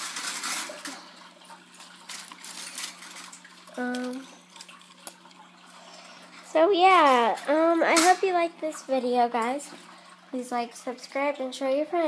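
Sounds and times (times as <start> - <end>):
small objects rustling and clinking: 0.0 - 1.0, 2.0 - 4.7
steady electrical hum: 0.0 - 12.0.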